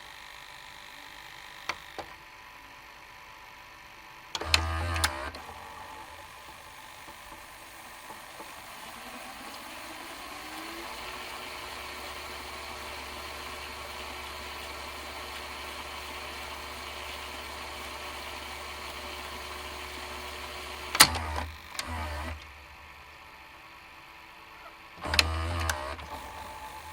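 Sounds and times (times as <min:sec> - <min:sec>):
tape mechanism whirring: 0:01.4 - 0:02.2, 0:04.3 - 0:23.5, 0:24.5 - 0:26.9
mechanism clunk: 0:20.9 - 0:22.5.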